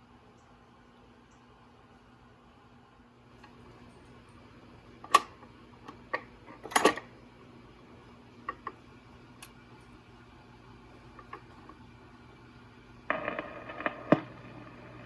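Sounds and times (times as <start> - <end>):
faint low hum: 0.0 - 15.0
record player clicks: 5.0 - 7.1, 13.1 - 15.0.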